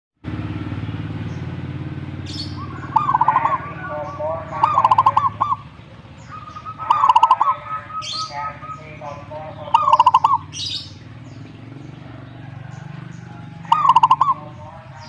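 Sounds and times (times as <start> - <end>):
dove cooing: 2.0 - 15.0.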